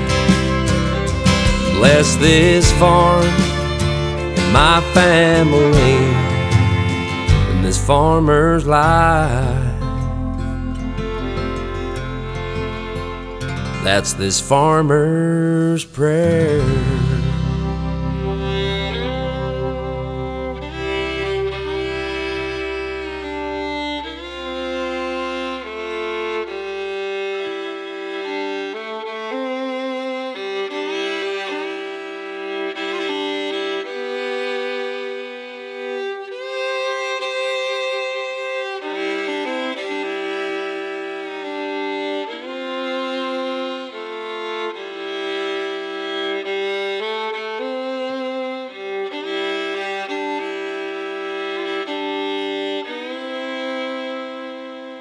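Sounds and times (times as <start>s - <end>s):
sustained chords: 0.0s - 28.2s
slow fiddle melody: 0.0s - 55.0s.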